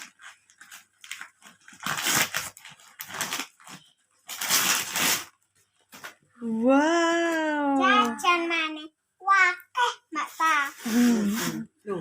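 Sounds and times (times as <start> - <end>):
wrapping paper ripping: 0.0 - 6.1
gift wrapping crinkling: 0.0 - 6.2.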